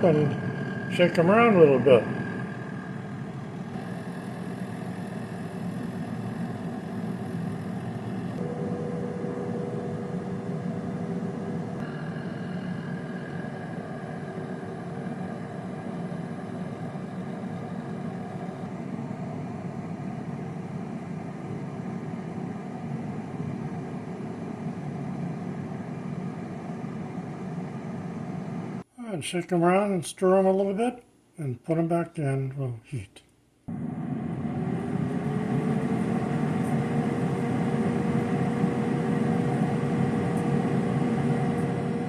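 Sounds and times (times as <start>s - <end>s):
air fryer fan hum: 0.0s - 28.9s, 33.7s - 42.0s
faint extra tone: 8.1s - 18.7s.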